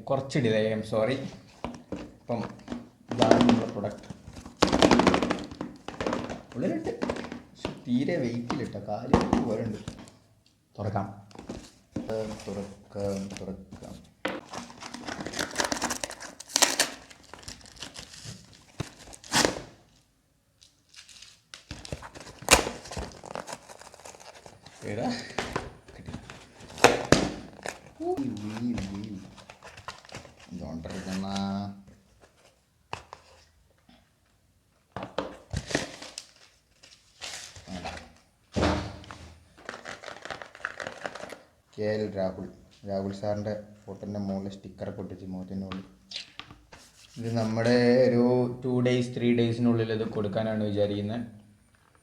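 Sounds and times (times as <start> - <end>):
packaging crinkling and tearing: 12.1 - 31.4, 35.5 - 38.2, 39.6 - 41.7
loud thunk: 38.6 - 39.1.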